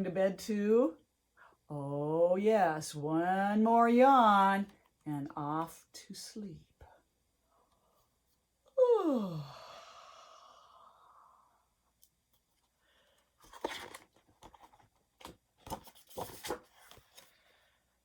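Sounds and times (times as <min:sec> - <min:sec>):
woman yawning: 0:08.8 - 0:10.9
paper pages rustling: 0:13.4 - 0:17.5.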